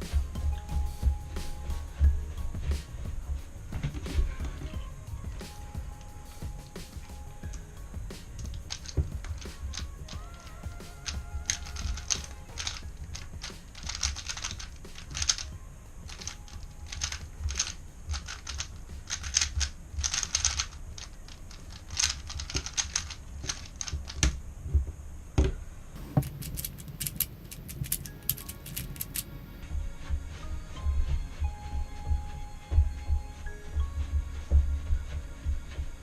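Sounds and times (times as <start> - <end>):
puzzle cube clicking while turned: 8.4 - 15.5, 16.1 - 24.4, 26.0 - 29.6.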